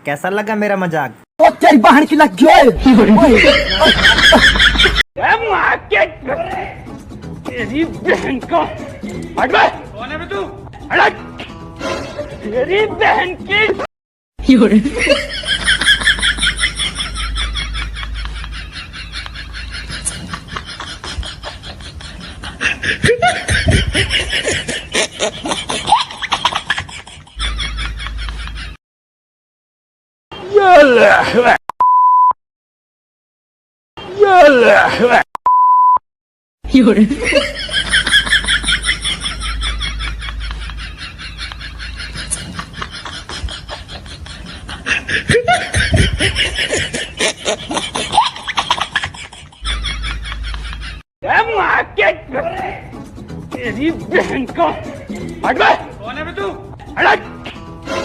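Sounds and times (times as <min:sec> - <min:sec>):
snickering laughter: 0:03.2 - 0:05.0, 0:14.9 - 0:28.8, 0:37.1 - 0:51.0.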